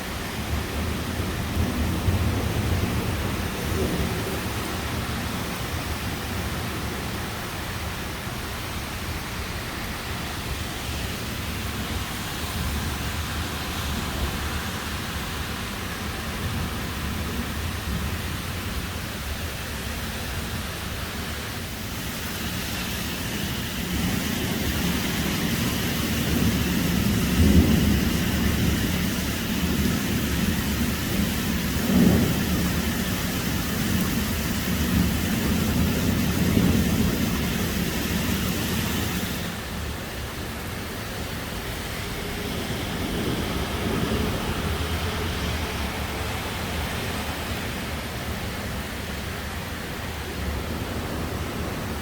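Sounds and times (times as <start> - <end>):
heavy rain hiss: 0.0 - 52.0
low thunder rumbling: 0.3 - 6.3, 23.1 - 40.3.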